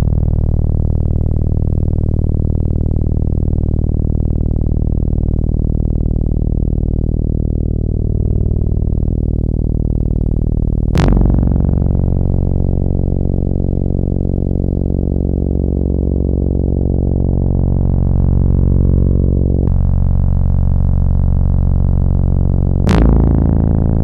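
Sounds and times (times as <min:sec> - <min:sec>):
synthesizer bass note: 0:07.2 - 0:24.0.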